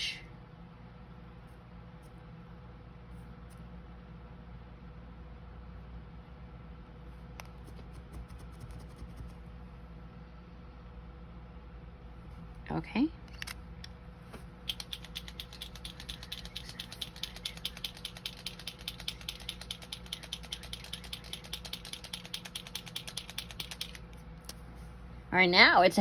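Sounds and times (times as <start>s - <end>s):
paint marker clicking: 14.6s - 24.6s.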